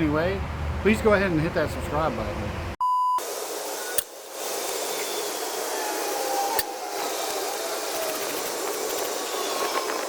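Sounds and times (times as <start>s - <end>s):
whooshing hiss: 3.2s - 10.0s.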